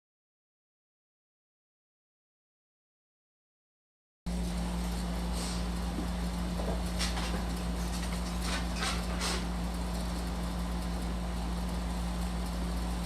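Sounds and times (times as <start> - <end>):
steady low hum: 4.3 - 13.0.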